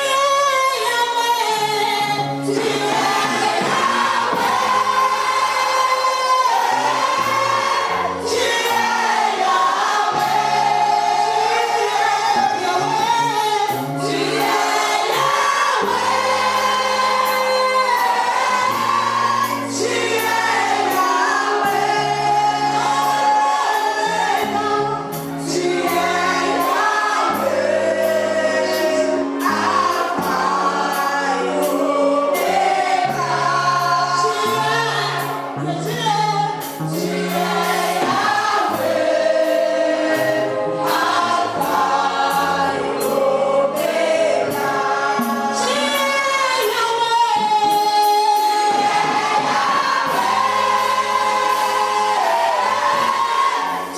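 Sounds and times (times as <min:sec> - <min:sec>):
choir singing gospel with band: 0:00.0 - 0:53.9
bass line: 0:01.5 - 0:31.7, 0:47.3 - 0:53.9
steady drum beat: 0:02.5 - 0:33.4, 0:36.8 - 0:46.3, 0:48.0 - 0:53.9.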